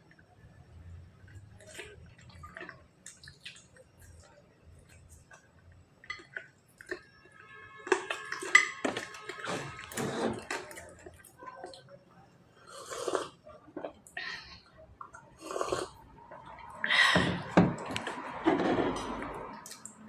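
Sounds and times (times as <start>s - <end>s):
kitchenware knocking and clinking: 17.2s - 19.4s.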